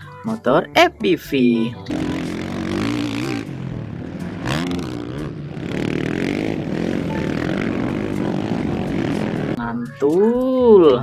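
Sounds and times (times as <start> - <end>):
motorcycle engine revving: 1.9 - 9.6.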